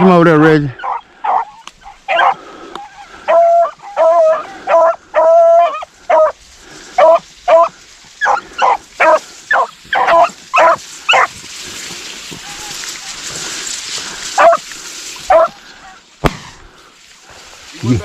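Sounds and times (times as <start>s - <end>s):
hounds baying: 0.7s - 11.4s, 12.4s - 16.0s.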